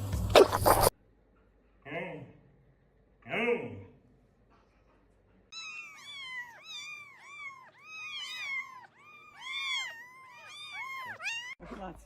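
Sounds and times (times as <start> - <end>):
cat meowing: 5.5 - 11.6.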